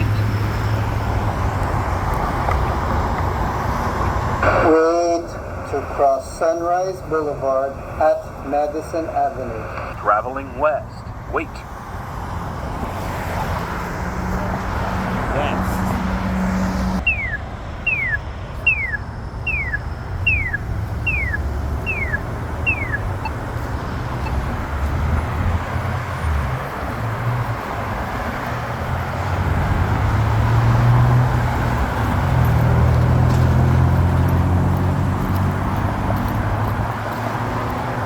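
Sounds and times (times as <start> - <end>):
pedestrian signal chirping: 0.0 - 1.5, 16.3 - 26.3
road traffic: 0.0 - 38.0.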